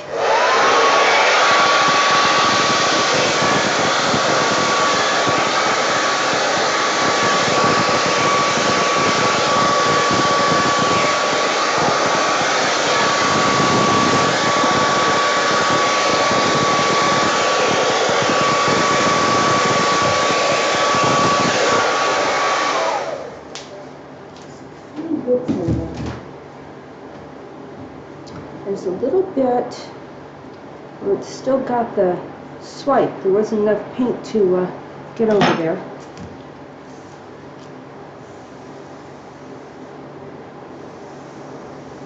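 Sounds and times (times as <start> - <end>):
hair dryer whine: 0.0 - 23.8.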